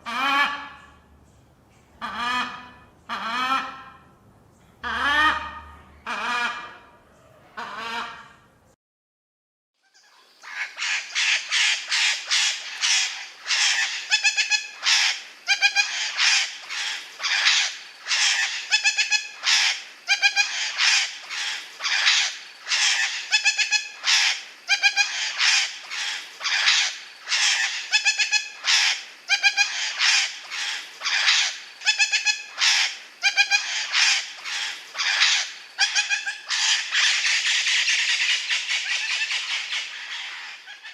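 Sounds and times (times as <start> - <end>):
parrot squawking: 10.4 - 40.9.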